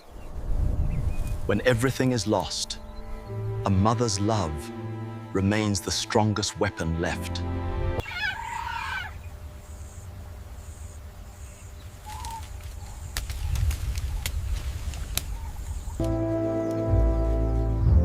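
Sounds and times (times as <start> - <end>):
bird calls and chirps: 0.0 - 1.4, 8.0 - 18.0.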